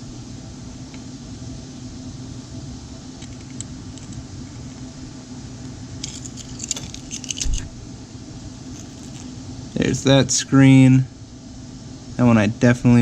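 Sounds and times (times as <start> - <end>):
steady low hum: 0.0 - 13.0
small metal parts clinking: 3.2 - 4.2, 6.0 - 7.7, 8.6 - 9.4.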